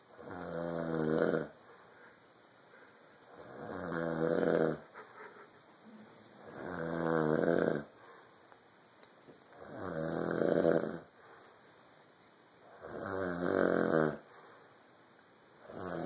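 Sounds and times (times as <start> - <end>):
man snoring: 0.2 - 1.5, 3.4 - 4.8, 6.5 - 7.9, 9.6 - 11.0, 12.8 - 14.2.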